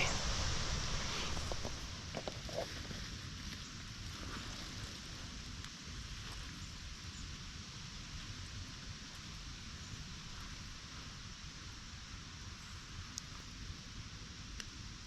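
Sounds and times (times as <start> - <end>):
wind hissing: 0.0 - 3.9
wind rumble on microphone: 0.0 - 15.0.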